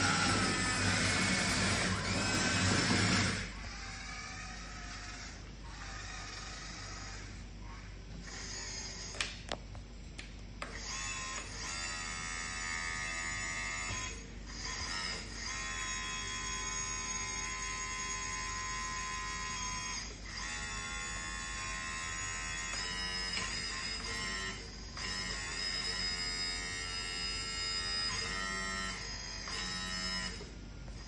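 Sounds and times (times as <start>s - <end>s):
electric pump and motor whining: 0.0s - 9.7s, 10.5s - 31.0s.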